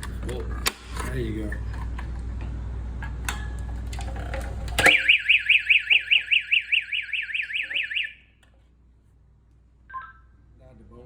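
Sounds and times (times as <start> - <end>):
fire alarm sweeping tone: 4.9 - 8.2.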